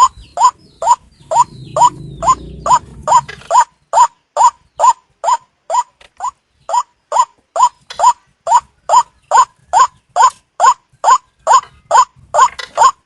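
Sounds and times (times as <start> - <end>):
low rumbling noise: 0.0 - 3.6
bird lure call rising notes: 0.0 - 13.0.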